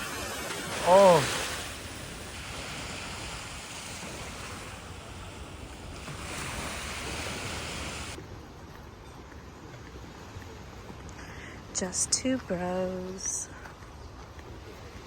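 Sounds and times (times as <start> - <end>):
ocean surf washing in: 0.0 - 8.2
wind: 0.0 - 15.0.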